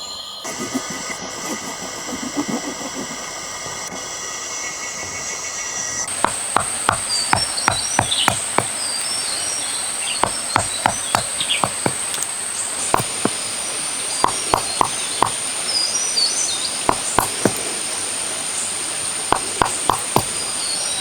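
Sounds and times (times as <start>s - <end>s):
high insect drone: 0.1s - 21.0s
bird chirps: 6.0s - 21.0s
hand tool knocking on wood: 6.1s - 9.3s, 10.0s - 13.5s, 14.2s - 15.4s, 16.9s - 17.7s, 19.3s - 20.6s.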